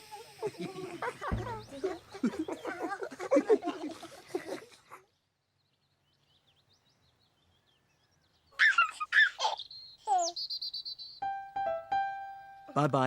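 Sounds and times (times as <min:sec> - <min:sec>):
birdlike chirps and warbles: 0:00.6 - 0:03.5, 0:04.8 - 0:11.5.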